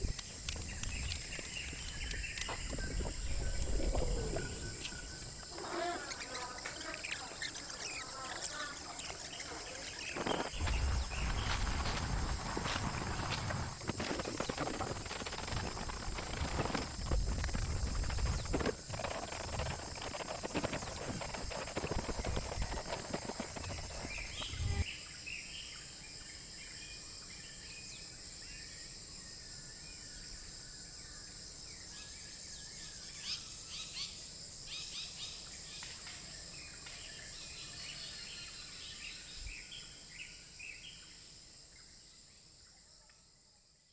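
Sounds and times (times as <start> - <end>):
birds chirping: 0.0 - 13.3, 16.6 - 24.8
high insect drone: 0.0 - 43.0.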